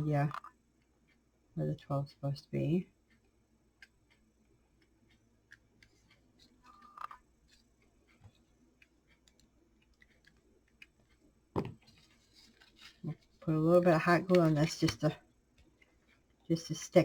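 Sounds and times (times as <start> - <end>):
small clicks and taps: 3.1 - 13.5.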